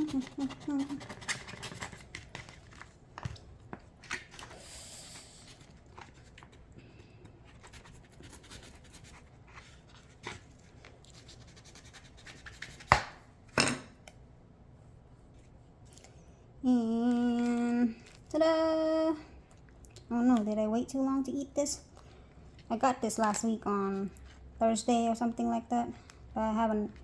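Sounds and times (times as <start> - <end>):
knife scratching hard shell: 0.0 - 2.1.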